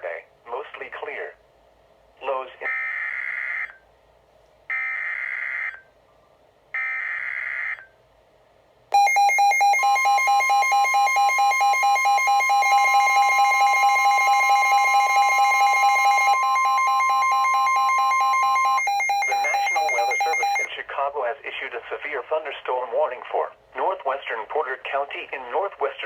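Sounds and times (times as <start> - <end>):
rapidly pulsing electronic alarm: 2.7 - 3.8, 4.7 - 5.8, 6.8 - 7.9, 9.0 - 20.7
digital data bursts: 9.0 - 20.7
steady alarm tone: 9.0 - 20.7.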